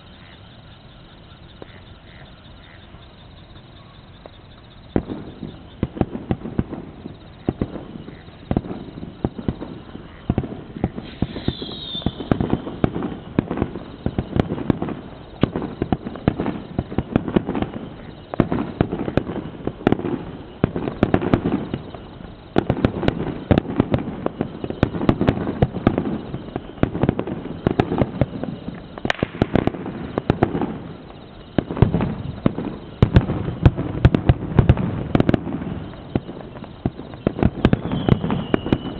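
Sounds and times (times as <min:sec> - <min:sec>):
firework whistle: 0:00.0 - 0:38.9
fireworks bangs and crackles: 0:00.0 - 0:38.9.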